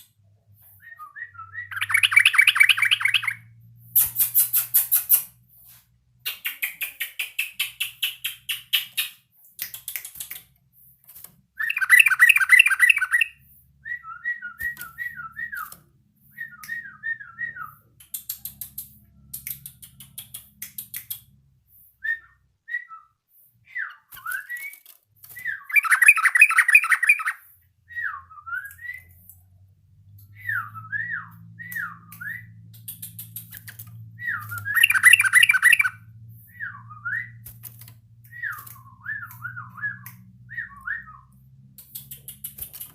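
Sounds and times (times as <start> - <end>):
bird swooping whistled notes: 34.2 - 37.4
bird harsh chattering: 34.8 - 35.9.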